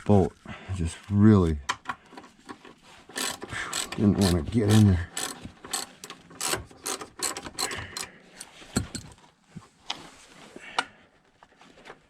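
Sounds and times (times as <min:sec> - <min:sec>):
ratchet wrench clicking: 0:03.1 - 0:09.1.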